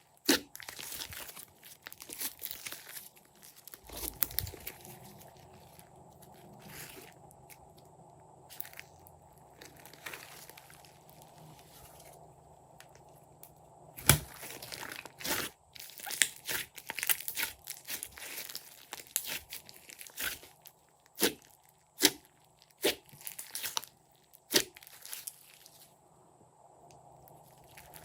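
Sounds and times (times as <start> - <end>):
slime popping and crackling: 0.2 - 5.8, 14.0 - 25.5.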